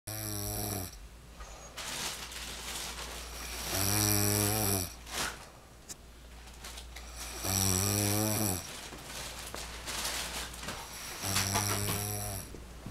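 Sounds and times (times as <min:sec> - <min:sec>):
man snoring deeply: 0:00.1 - 0:01.0, 0:03.5 - 0:05.0, 0:07.2 - 0:08.7, 0:10.9 - 0:12.5.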